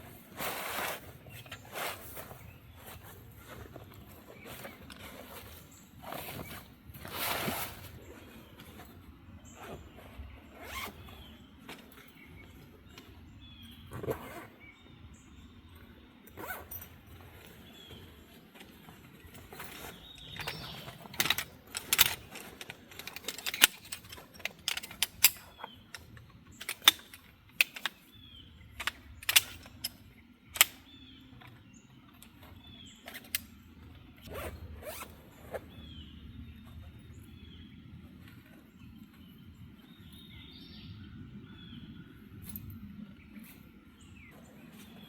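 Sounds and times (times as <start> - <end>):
zipping: 10.6 - 11.0, 34.3 - 35.6
camping gear clicks and snaps: 13.9 - 14.5, 16.3 - 35.6.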